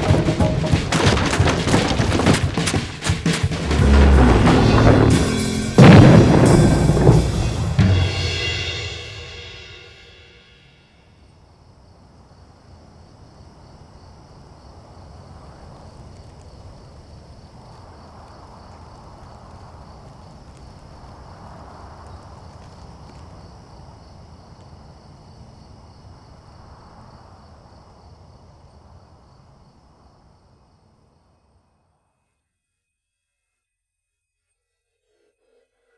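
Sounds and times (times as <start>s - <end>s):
wind rushing: 0.0s - 8.9s
insects chirping: 0.0s - 35.9s
continuous low rumble: 3.4s - 8.5s.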